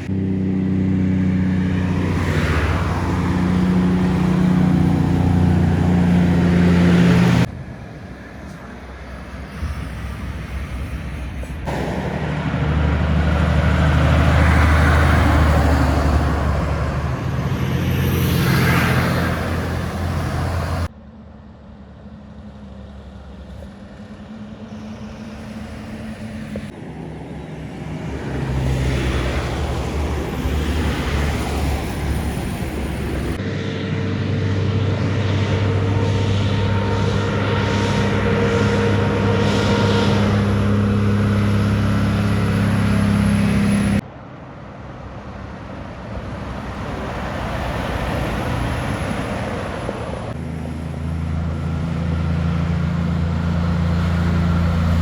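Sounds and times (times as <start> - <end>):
heavy trucks passing: 0.0 - 20.9, 21.8 - 55.0.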